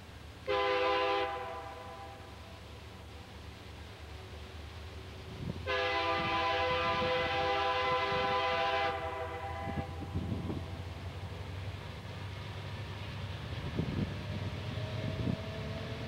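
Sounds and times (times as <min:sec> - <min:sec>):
locomotive engine rumble: 0:00.0 - 0:16.0
locomotive horn chord: 0:00.4 - 0:02.3, 0:05.7 - 0:10.0.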